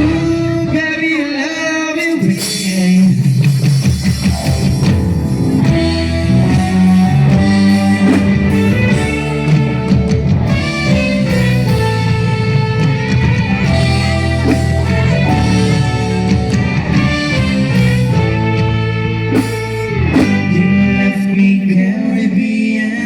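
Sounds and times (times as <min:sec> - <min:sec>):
bass line: 0:04.0 - 0:22.0
guitar melody: 0:04.2 - 0:22.2.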